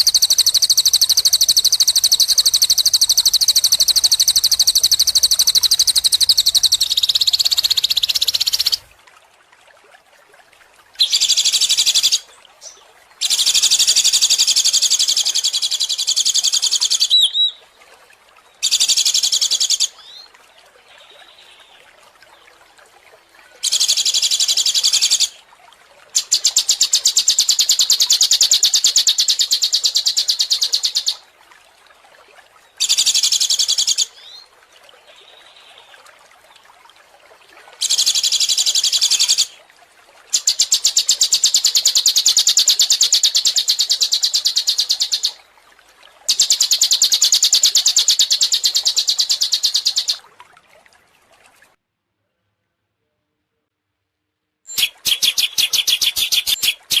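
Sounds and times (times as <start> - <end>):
songbird singing: 0.0 - 8.9, 11.0 - 13.8, 15.0 - 17.6, 40.3 - 45.4, 46.3 - 50.2, 54.7 - 57.0.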